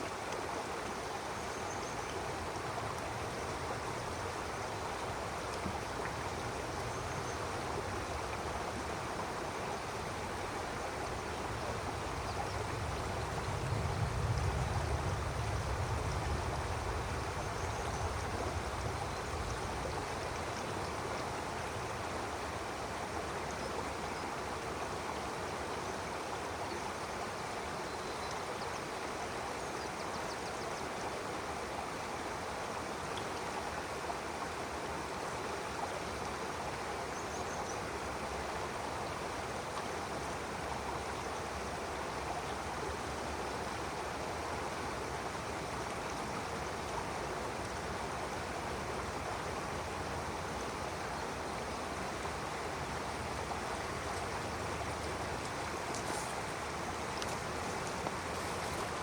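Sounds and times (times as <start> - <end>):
stream water flowing: 0.0 - 59.0.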